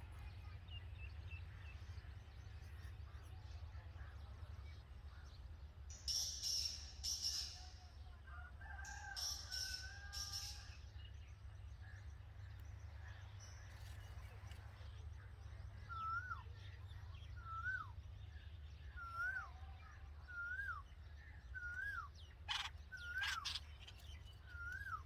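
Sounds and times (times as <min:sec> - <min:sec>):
nestlings raspy calls: 0:21.7 - 0:25.0.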